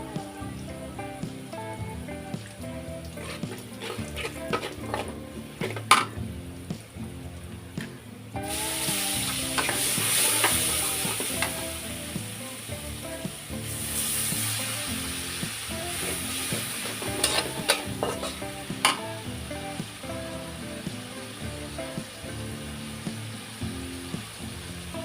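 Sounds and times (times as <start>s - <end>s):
food sizzling in hot oil: 0.0s - 25.0s
quiet background music: 0.0s - 25.0s
utensil clicking against pan: 3.1s - 6.2s, 16.0s - 19.0s.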